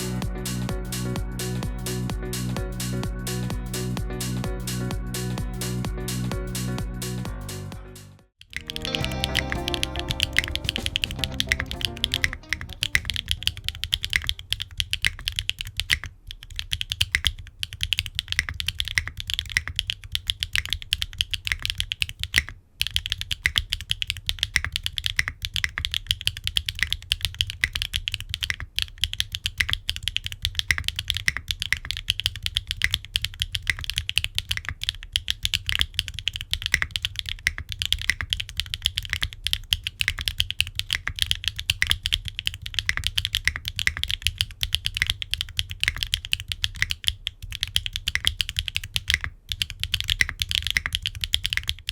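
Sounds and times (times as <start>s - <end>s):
fast keyboard typing: 8.4s - 51.9s.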